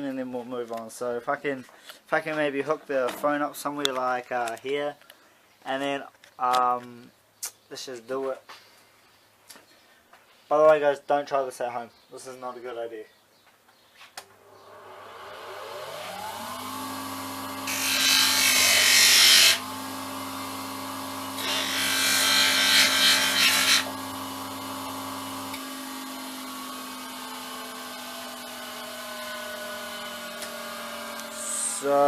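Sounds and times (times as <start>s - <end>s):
power tool motor humming: 14.5s - 32.0s
tool grinding phone screen: 16.0s - 20.0s, 21.3s - 24.1s.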